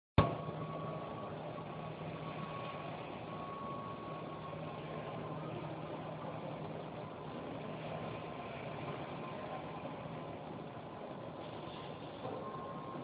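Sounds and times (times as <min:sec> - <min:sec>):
train car rumble and hum: 0:00.2 - 0:13.0
faint high tone: 0:12.2 - 0:13.0.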